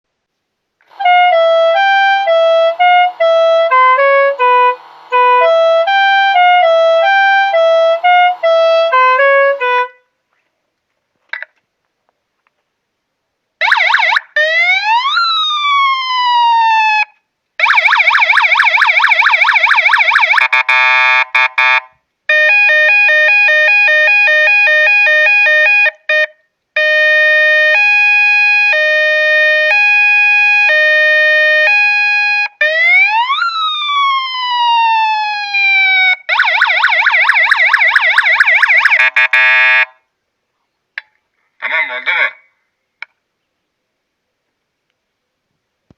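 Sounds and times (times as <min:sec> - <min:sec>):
motorcycle horn electronic tune: 0:01.0 - 0:10.1, 0:38.9 - 0:40.0
electronic siren sounds: 0:13.6 - 0:17.0, 0:17.6 - 0:25.9, 0:26.8 - 0:39.9.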